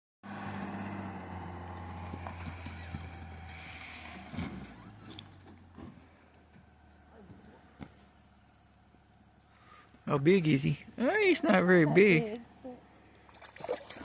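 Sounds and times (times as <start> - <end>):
low engine hum: 0.2 - 14.0.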